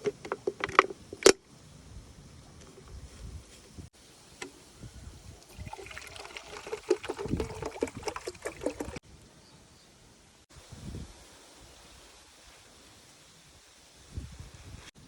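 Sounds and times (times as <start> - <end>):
water trickling and splashing: 5.2 - 9.0.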